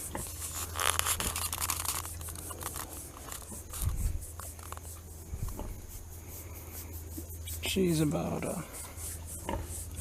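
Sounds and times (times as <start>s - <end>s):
wood chip bedding rustling: 0.2s - 4.9s.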